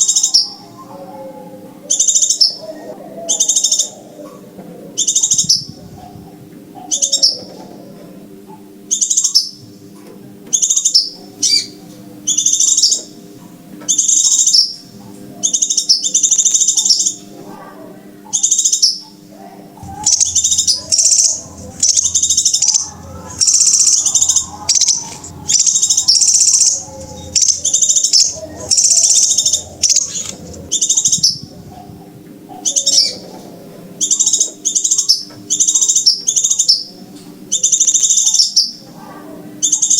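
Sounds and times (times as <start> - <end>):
faint low hum: 0.0 - 39.9
bird chirping bursts: 19.8 - 31.9.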